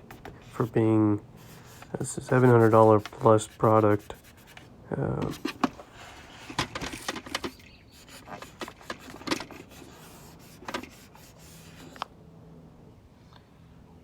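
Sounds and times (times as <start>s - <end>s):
hard plastic parts clicking: 5.2s - 11.0s.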